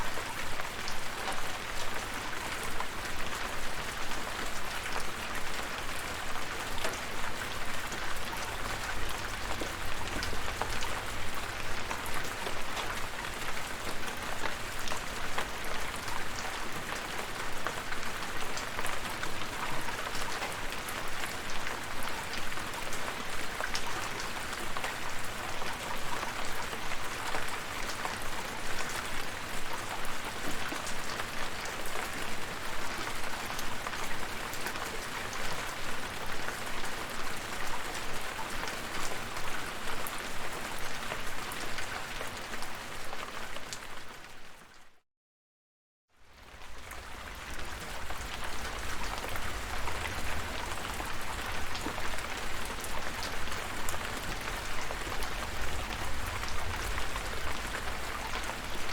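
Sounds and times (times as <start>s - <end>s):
steady rain hiss: 46.9s - 58.9s.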